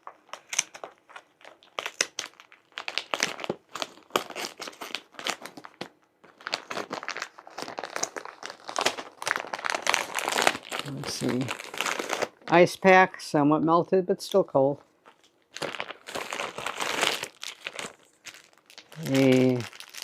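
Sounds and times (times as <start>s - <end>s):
foil pouch crinkling: 0.0s - 12.9s, 14.8s - 20.0s
foil tearing: 0.3s - 5.8s, 6.4s - 12.4s, 15.6s - 20.0s.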